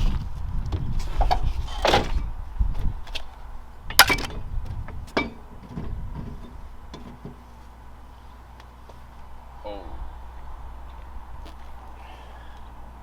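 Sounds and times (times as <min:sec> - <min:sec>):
knocks and clanks of car work: 0:01.2 - 0:02.3, 0:03.9 - 0:07.4.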